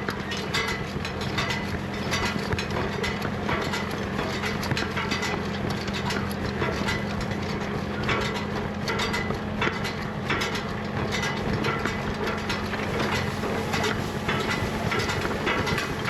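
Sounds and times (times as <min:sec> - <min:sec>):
machinery rattling and clanking: 0:00.0 - 0:16.0
tractor engine running: 0:11.7 - 0:16.0.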